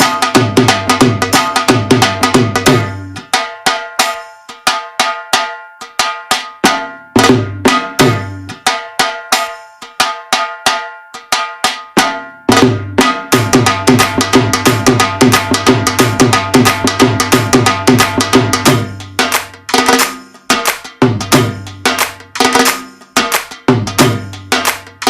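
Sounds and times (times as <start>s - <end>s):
heavy bass drum: 0.0s - 3.4s, 6.7s - 8.7s, 12.0s - 25.0s
sharp percussion hits: 0.0s - 25.0s.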